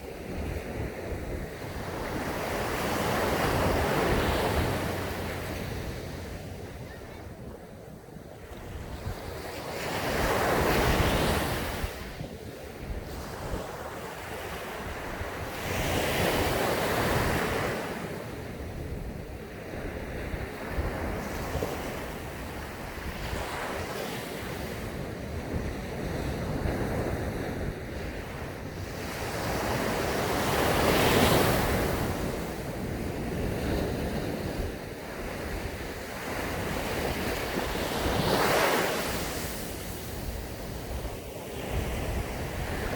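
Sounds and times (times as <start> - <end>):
wind rumble on microphone: 0.0 - 42.9
sea waves breaking on sand: 33.6 - 42.9.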